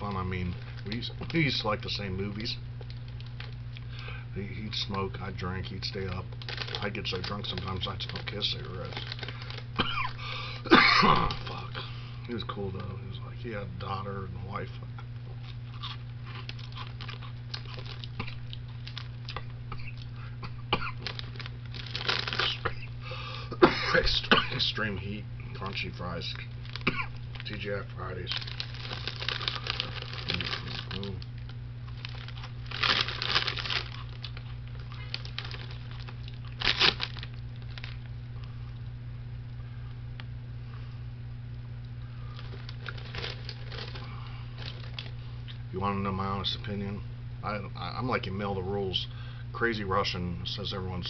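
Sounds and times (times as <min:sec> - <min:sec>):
chewing crunchy snacks: 0:00.0 - 0:04.0, 0:05.7 - 0:10.3, 0:11.1 - 0:11.9, 0:14.9 - 0:20.3, 0:20.9 - 0:22.9, 0:25.5 - 0:38.9, 0:42.2 - 0:45.6.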